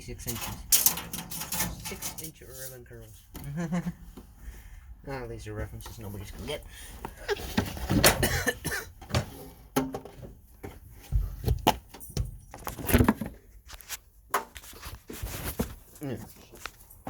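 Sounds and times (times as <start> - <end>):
boards and tools clattering: 0.2 - 2.4, 7.3 - 13.4.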